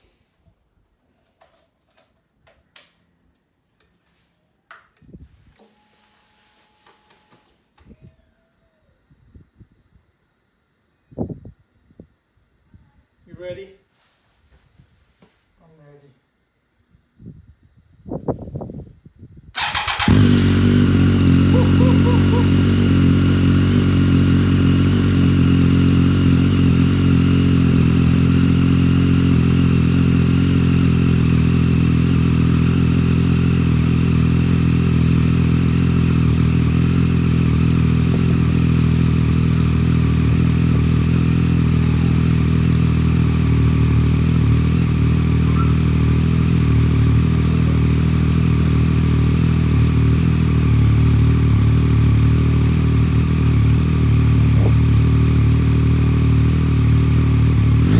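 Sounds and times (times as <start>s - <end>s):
motorcycle engine idling: 19.6s - 57.9s.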